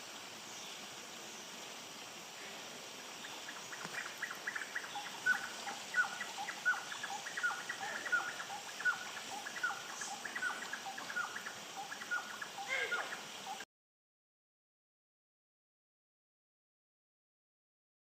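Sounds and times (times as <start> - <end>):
faint steady hiss: 0.0 - 13.7
bird calling sharp notes: 3.8 - 13.6.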